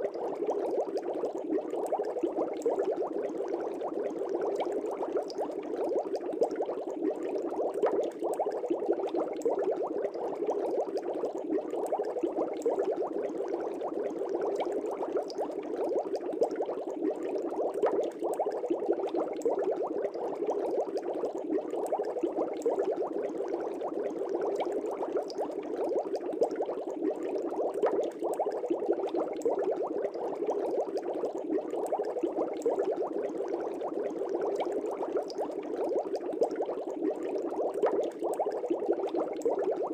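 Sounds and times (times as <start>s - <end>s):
aquarium air bubbling: 0.0s - 39.9s.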